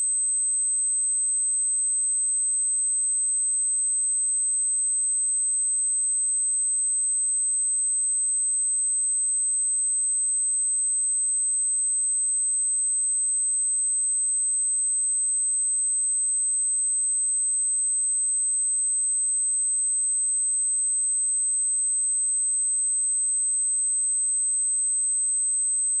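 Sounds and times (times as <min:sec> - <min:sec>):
high-pitched sine test tone: 0:00.0 - 0:26.0.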